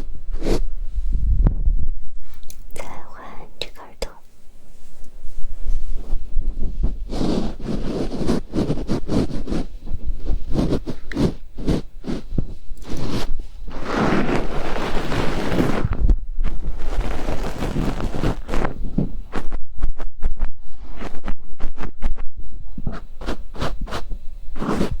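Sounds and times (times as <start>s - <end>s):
tools scraping on microphone: 6.8s - 19.6s, 22.8s - 25.0s.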